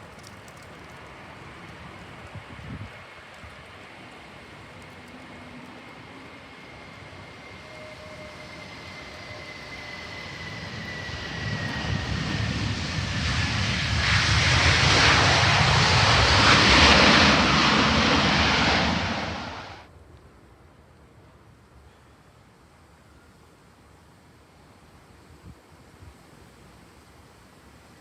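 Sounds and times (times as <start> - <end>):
airliner passing: 0.0 - 19.9.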